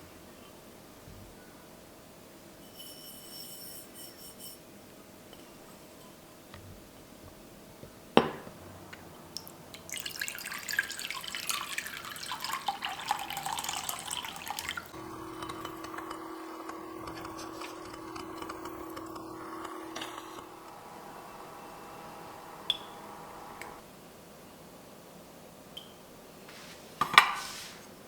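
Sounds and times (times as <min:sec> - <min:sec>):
steady even hum: 0:05.6 - 0:24.2
water running from a tap: 0:09.4 - 0:23.8.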